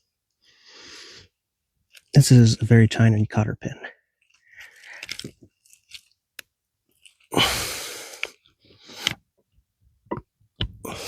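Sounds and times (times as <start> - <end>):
person exhaling: 7.3 - 9.1, 10.8 - 11.0.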